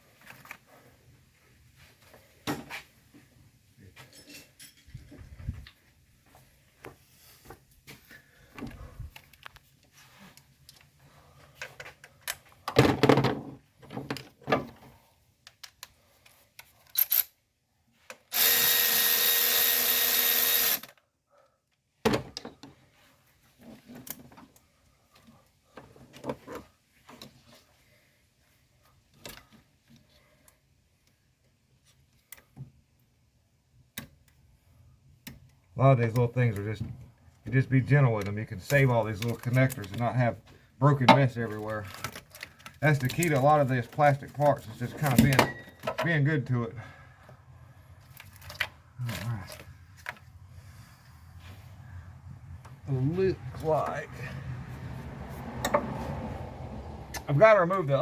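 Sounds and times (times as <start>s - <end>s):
power tool running: 18.3s - 20.9s.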